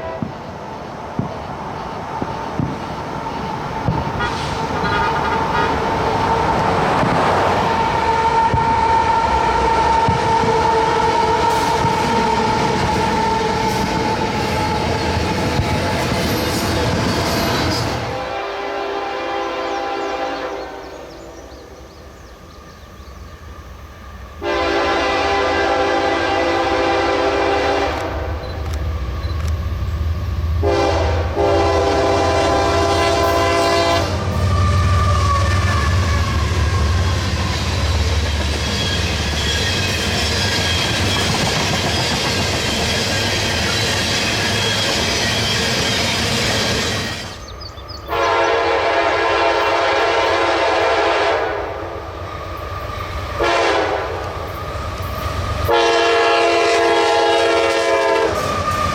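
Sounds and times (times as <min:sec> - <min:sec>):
locomotive horn blasts: 0:00.0 - 0:00.4, 0:04.1 - 0:14.9, 0:18.0 - 0:20.9, 0:24.4 - 0:28.6, 0:30.6 - 0:37.5, 0:48.1 - 0:51.8, 0:53.4 - 0:54.4, 0:55.7 - 0:58.6
train wheel and rail noise: 0:00.0 - 0:58.9.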